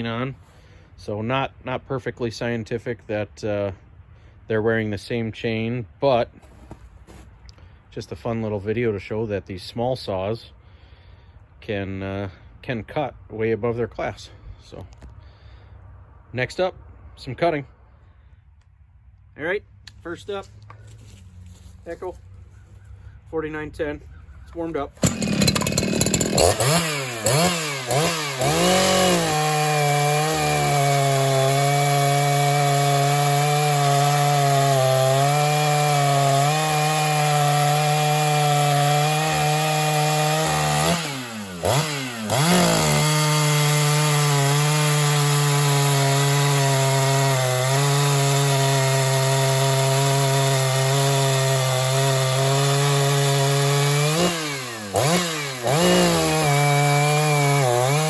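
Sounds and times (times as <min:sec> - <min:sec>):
chainsaw cutting wood: 0:25.0 - 0:58.0.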